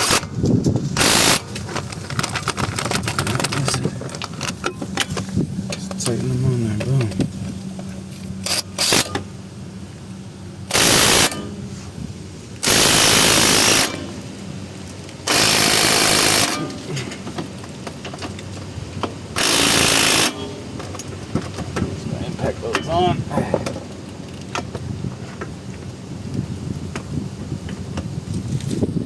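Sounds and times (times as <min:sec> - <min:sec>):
impact wrench hammering: 0:08.4 - 0:09.3, 0:10.7 - 0:11.7, 0:12.6 - 0:14.3, 0:15.3 - 0:17.5, 0:19.4 - 0:21.6.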